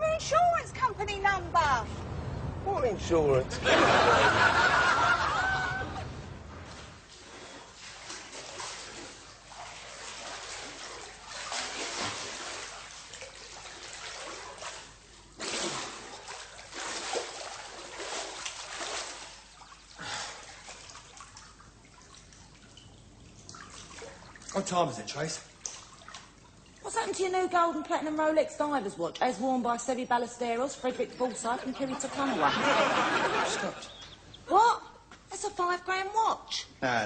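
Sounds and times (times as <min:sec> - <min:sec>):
water splashing in pool: 0:03.6 - 0:28.8, 0:30.2 - 0:34.6.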